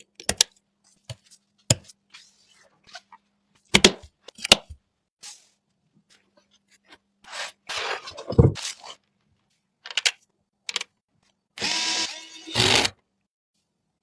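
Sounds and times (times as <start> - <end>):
electric screwdriver whirring: 11.6 - 13.0.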